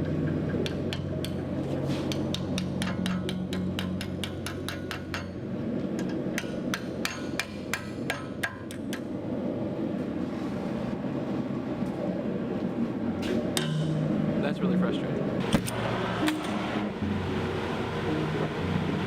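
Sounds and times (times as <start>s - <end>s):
hammer striking steel on anvil: 0.0s - 5.4s, 6.0s - 9.1s, 13.2s - 14.1s
low rushing noise: 8.8s - 19.0s.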